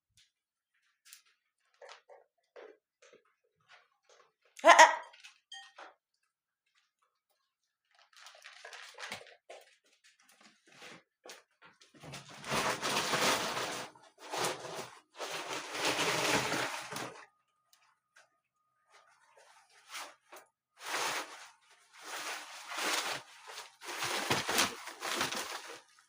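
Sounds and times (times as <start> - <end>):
puppy rustling in fabric tunnel: 20.8 - 26.0.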